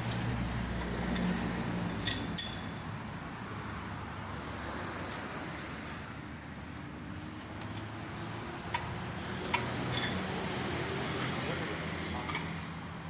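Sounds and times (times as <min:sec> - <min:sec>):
metal clinks: 0:01.9 - 0:02.8.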